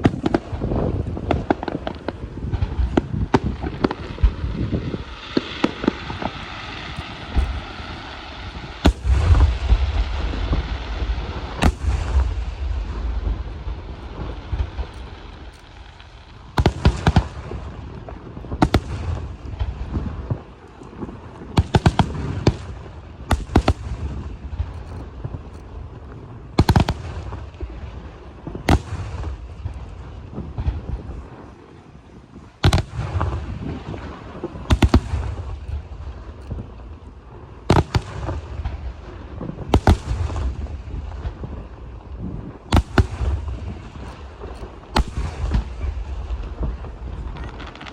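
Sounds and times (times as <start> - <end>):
firework shells booming: 0.0 - 20.5, 32.6 - 36.7, 37.6 - 47.9
crackling echo rumble: 0.0 - 47.9.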